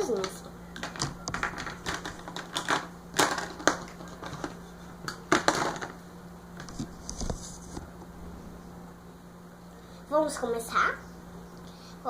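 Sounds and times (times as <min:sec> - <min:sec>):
plastic pieces clicking and knocking: 0:00.2 - 0:06.0.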